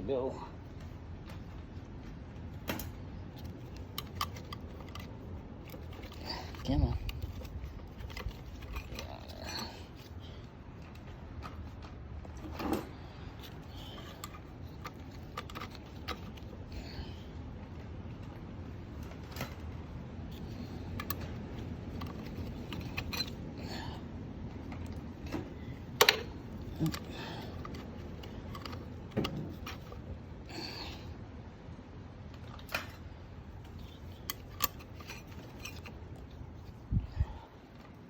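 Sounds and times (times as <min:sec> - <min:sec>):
metal clutch plates clinking: 0:02.8 - 0:10.1, 0:20.3 - 0:23.9, 0:25.9 - 0:30.0, 0:33.6 - 0:36.3.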